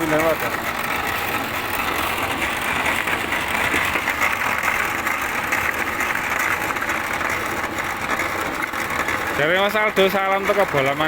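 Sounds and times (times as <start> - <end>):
pellet machine running: 0.0 - 11.0.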